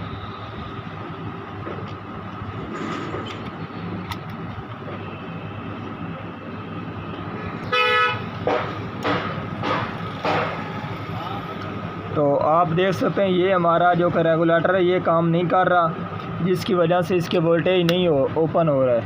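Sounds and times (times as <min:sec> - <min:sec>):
traffic noise: 0:00.0 - 0:19.0
vehicle horn honk: 0:07.7 - 0:08.7.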